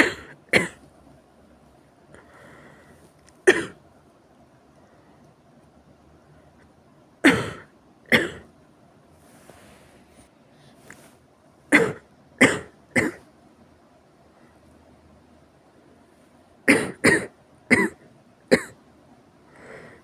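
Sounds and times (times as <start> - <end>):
person coughing: 0.0 - 0.8, 3.4 - 3.8, 7.2 - 8.5, 11.7 - 13.3, 16.7 - 18.8.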